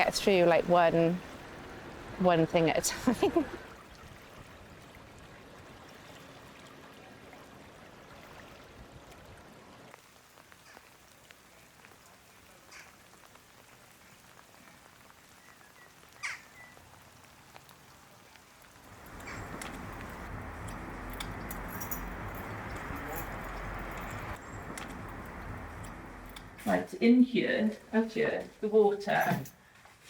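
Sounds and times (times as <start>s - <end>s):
light rain hiss: 0.0s - 30.0s
raindrops ticking: 9.9s - 29.4s.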